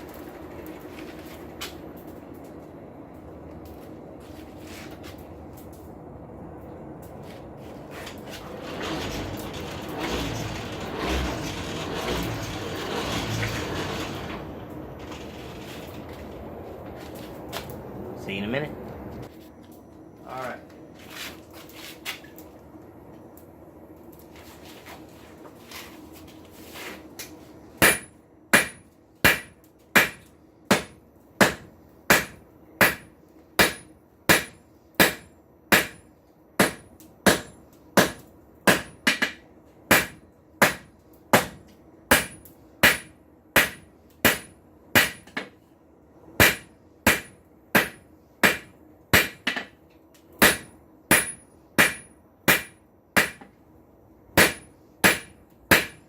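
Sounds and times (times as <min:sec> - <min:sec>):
low steady hum: 0:00.0 - 0:56.0
hammer striking steel on anvil: 0:27.8 - 0:45.6, 0:46.4 - 0:49.8, 0:50.4 - 0:53.5, 0:54.4 - 0:56.0.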